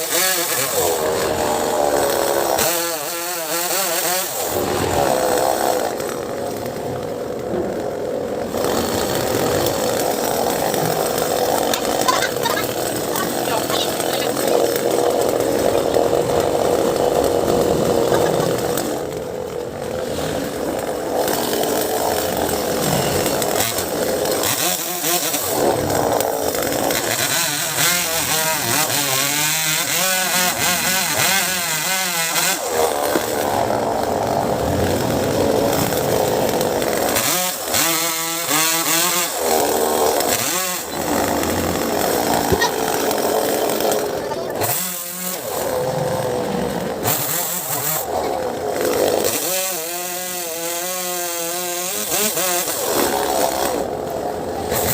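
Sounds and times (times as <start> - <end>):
chainsaw revving and cutting wood: 0.0 - 54.9.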